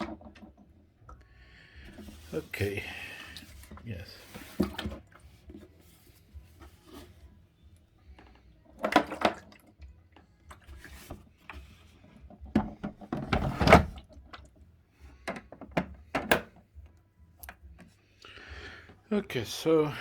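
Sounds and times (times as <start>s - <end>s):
plastic water tank knocks and scrapes: 3.4s - 5.9s, 12.3s - 14.4s.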